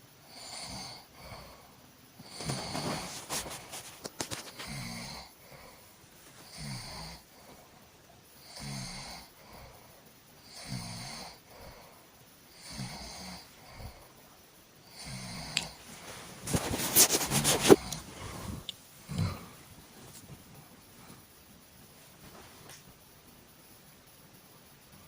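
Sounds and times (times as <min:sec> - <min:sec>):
person snoring: 0:00.3 - 0:03.5, 0:04.5 - 0:05.8, 0:06.4 - 0:07.6, 0:08.4 - 0:09.8, 0:10.4 - 0:11.9, 0:12.5 - 0:14.1, 0:14.8 - 0:15.8, 0:16.5 - 0:19.6.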